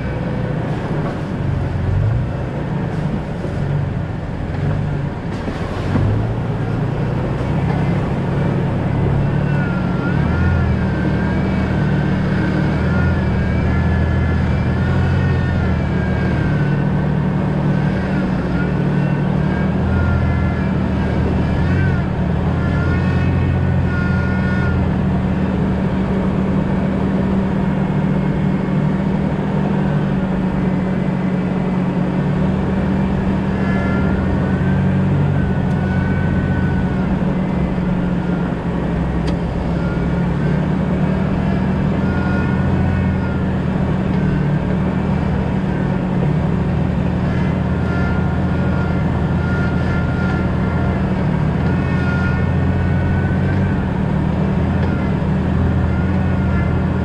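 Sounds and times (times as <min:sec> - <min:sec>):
car engine and road noise: 0:00.0 - 0:57.0.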